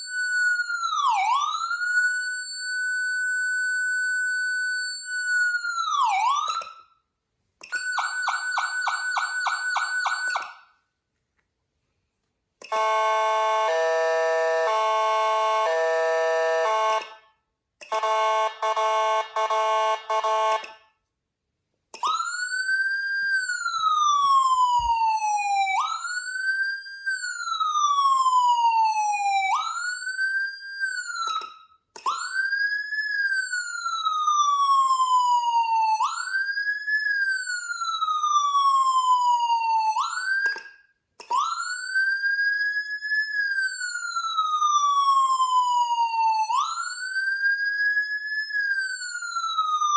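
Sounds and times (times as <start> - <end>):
wailing siren: 0.0 - 4.0, 4.9 - 6.9, 12.7 - 17.1, 17.9 - 20.6, 22.0 - 40.6, 41.3 - 49.9.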